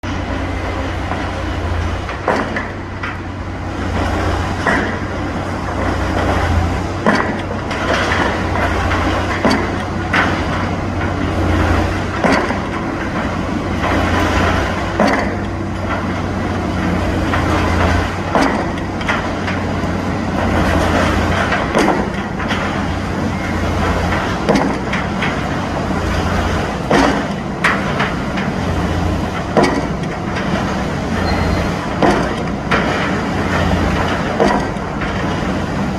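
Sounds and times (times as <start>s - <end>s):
engine running steadily: 0.0s - 35.9s
pile driver hammer knocking: 32.0s - 32.5s.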